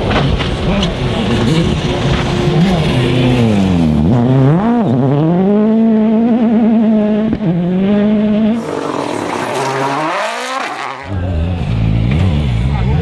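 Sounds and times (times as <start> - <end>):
rally car engine revving: 0.0 - 13.0.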